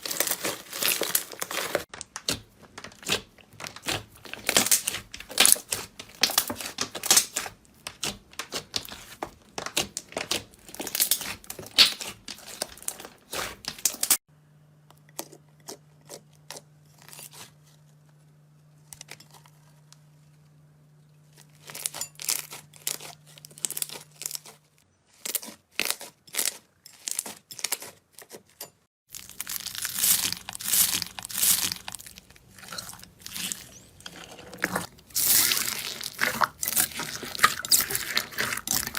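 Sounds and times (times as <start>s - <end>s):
slime crackling and popping: 0.0s - 14.2s, 29.1s - 33.8s, 34.8s - 38.9s
low steady hum: 14.3s - 25.1s.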